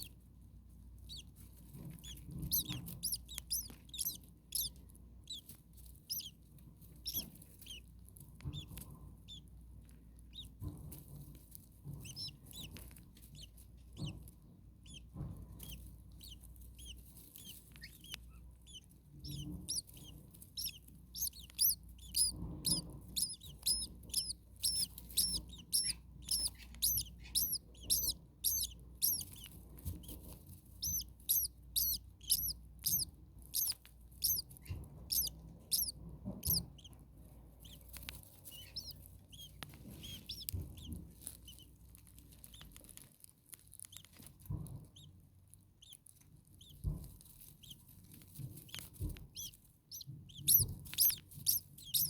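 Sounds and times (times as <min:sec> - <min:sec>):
starlings chirping: 0:01.1 - 0:01.3, 0:02.0 - 0:05.5, 0:06.1 - 0:06.3, 0:07.0 - 0:07.8, 0:15.6 - 0:30.2, 0:30.8 - 0:37.0, 0:38.4 - 0:40.9, 0:48.7 - 0:52.0.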